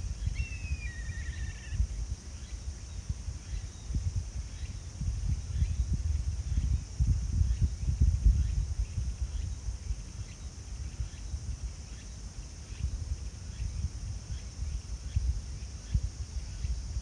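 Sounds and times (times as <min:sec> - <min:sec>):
wind buffeting microphone: 0:00.0 - 0:11.8.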